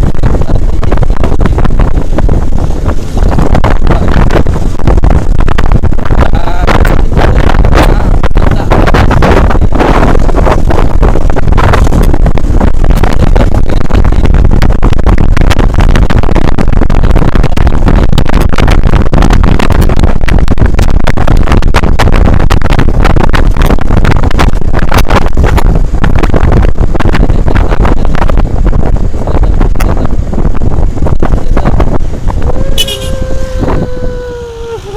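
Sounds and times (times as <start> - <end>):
wind buffeting microphone: 0.0 - 34.9.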